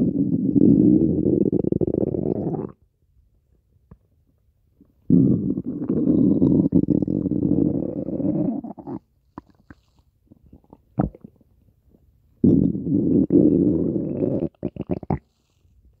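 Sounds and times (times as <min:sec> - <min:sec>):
stomach growling: 0:00.0 - 0:02.8, 0:05.1 - 0:11.5, 0:12.4 - 0:15.4.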